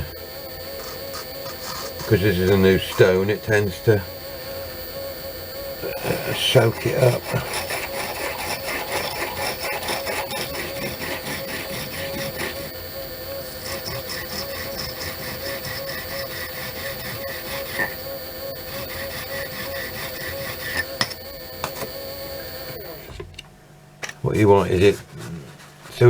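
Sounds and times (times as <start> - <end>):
lathe humming: 0.0 - 26.0
sharpening stone rasping on metal: 6.8 - 12.7, 13.6 - 21.8.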